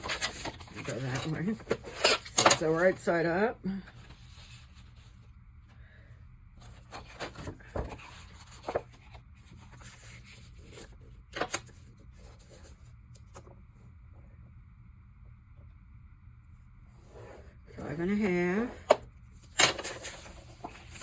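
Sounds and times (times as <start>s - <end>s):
paper rustling and sliding: 0.0s - 2.8s, 4.0s - 5.3s, 6.6s - 12.8s, 18.2s - 21.0s.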